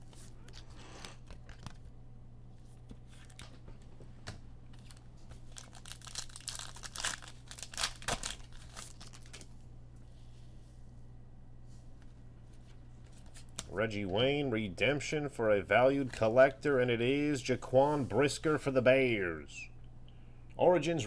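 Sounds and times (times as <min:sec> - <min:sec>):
wrapper tearing and crinkling: 0:04.8 - 0:09.6.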